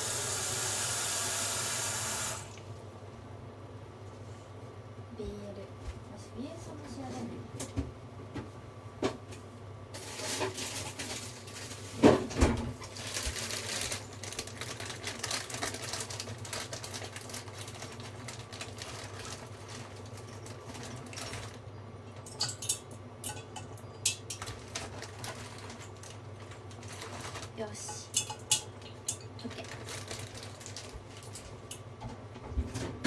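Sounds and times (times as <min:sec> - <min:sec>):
water running: 0:00.0 - 0:02.7
dishes and utensils clinking: 0:22.2 - 0:24.4, 0:27.8 - 0:29.4.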